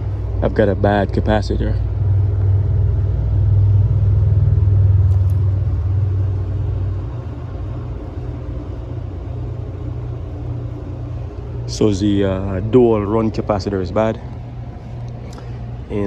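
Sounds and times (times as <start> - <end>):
air conditioner unit humming: 0.0 - 16.0.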